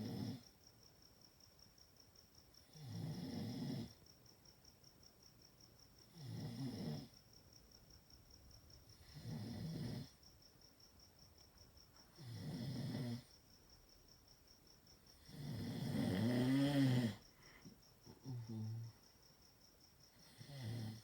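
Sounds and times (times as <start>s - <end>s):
dog snoring: 0.0s - 0.5s, 2.6s - 4.0s, 6.0s - 7.1s, 8.9s - 10.2s, 12.2s - 13.3s, 15.1s - 17.2s, 20.2s - 21.0s.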